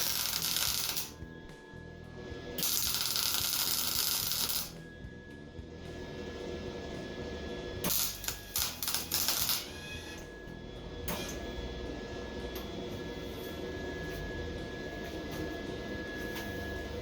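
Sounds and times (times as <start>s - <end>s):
arc welding bursts: 0.0s - 1.2s, 2.6s - 4.8s, 7.9s - 10.2s.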